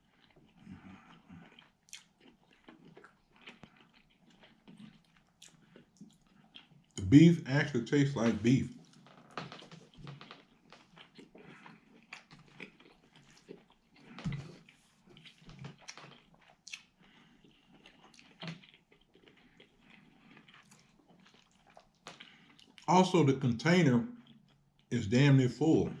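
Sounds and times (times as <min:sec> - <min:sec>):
person chewing food: 0:00.0 - 0:07.0, 0:08.8 - 0:22.9.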